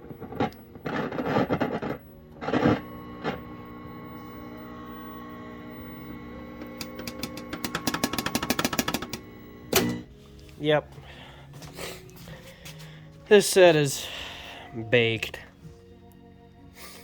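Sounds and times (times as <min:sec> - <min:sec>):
television multi-tone hum: 0:00.0 - 0:10.4.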